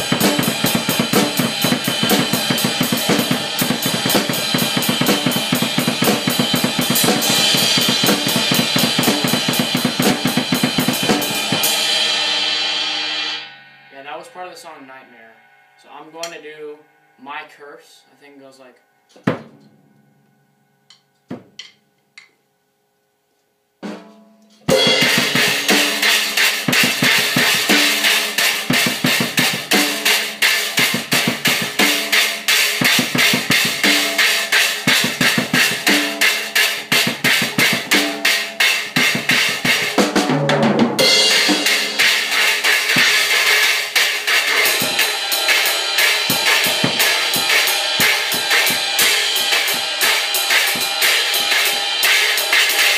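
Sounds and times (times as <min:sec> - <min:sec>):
drum kit played fast: 0:00.0 - 0:16.5, 0:23.8 - 0:52.9
crashing cymbals: 0:00.0 - 0:19.2, 0:41.0 - 0:52.9.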